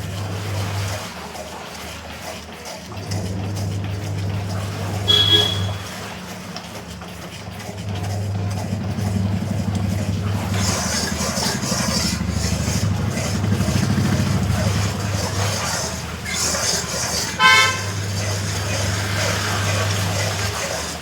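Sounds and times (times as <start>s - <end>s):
low motor hum: 0.0s - 21.0s
brief high tone: 5.1s - 5.8s.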